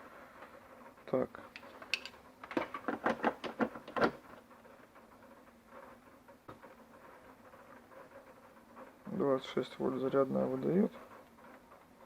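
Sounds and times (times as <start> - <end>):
small objects clicking and tapping: 1.6 - 2.9.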